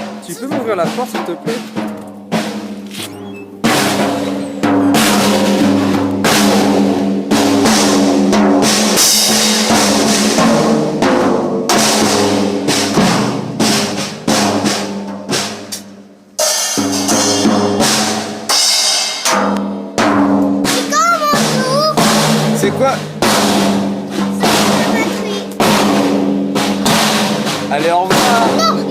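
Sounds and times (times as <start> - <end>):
backing track notes: 0.0 - 7.2, 20.6 - 28.9
drum kit playing loud: 0.0 - 28.9.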